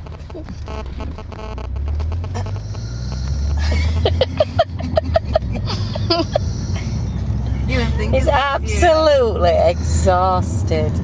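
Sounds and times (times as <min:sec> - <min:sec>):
short high-pitched sounds: 0:00.0 - 0:02.8
engine and road rumble: 0:00.0 - 0:11.0.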